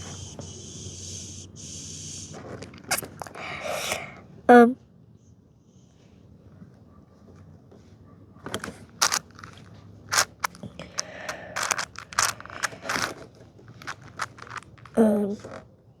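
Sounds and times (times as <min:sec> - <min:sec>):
puzzle cube clicking and scraping: 0:08.6 - 0:13.2, 0:13.8 - 0:15.6.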